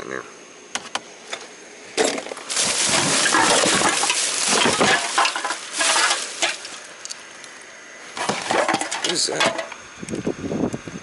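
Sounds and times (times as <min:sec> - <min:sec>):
rustling and clattering of items: 0:02.0 - 0:07.0, 0:08.2 - 0:09.7.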